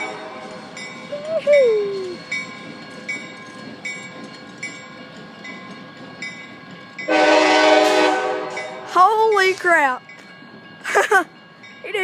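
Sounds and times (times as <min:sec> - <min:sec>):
train horn blasts: 0:00.0 - 0:00.6, 0:07.1 - 0:09.0
crossing bell striking: 0:00.0 - 0:12.0
freight train rolling past: 0:00.0 - 0:12.0.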